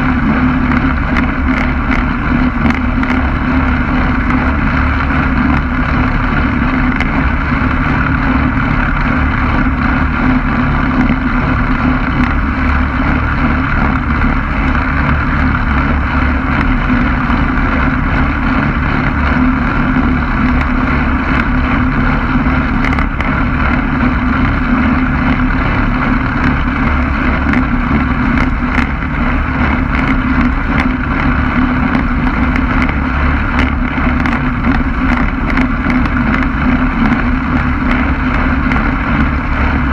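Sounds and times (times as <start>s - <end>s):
ultralight engine and propeller droning: 0.0s - 39.9s
wind rushing over microphone: 0.0s - 39.9s.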